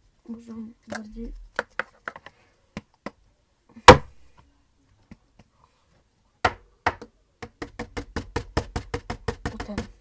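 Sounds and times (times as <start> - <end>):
knocks on hard surface: 6.4 - 10.0.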